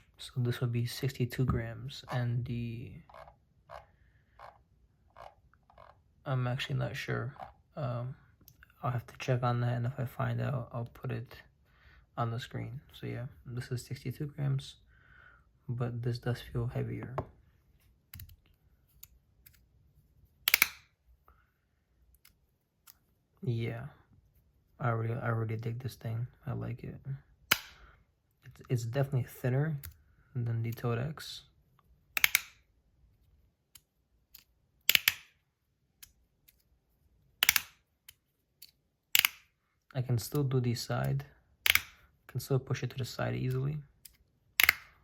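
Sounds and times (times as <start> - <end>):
metal slider clicking: 20.5 - 20.8, 32.2 - 32.6, 34.9 - 35.3, 37.4 - 37.8, 39.2 - 39.4, 44.6 - 44.9.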